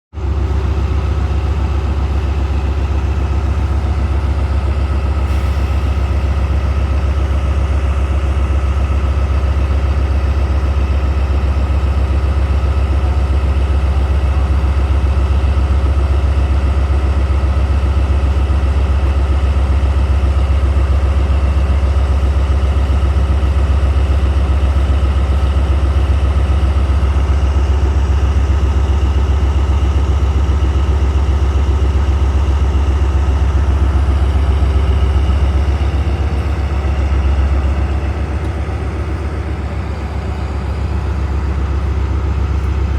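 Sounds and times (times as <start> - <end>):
locomotive engine idling: 0.1 - 42.9.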